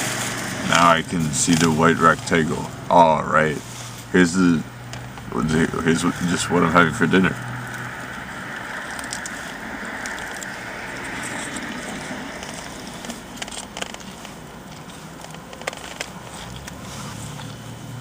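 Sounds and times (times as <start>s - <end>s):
foil wrapper crinkling: 7.3s - 17.6s.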